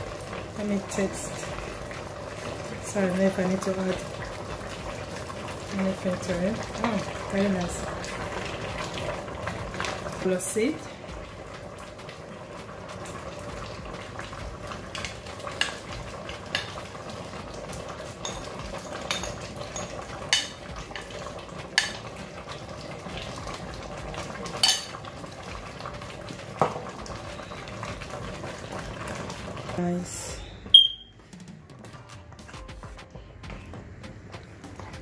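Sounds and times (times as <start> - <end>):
soup simmering hiss: 0.0 - 31.3
spoon clinking against pot: 18.2 - 21.1, 24.6 - 25.0.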